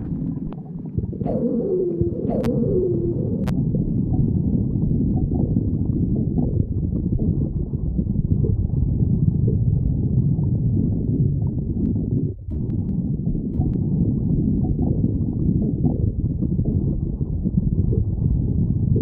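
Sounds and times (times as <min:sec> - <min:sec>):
stomach growling: 0:00.0 - 0:19.0.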